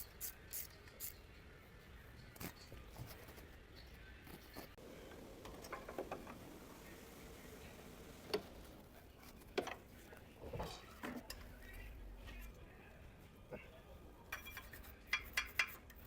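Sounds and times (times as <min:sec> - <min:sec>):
hand tools and metal parts clicking: 0:00.0 - 0:01.2, 0:14.3 - 0:16.0.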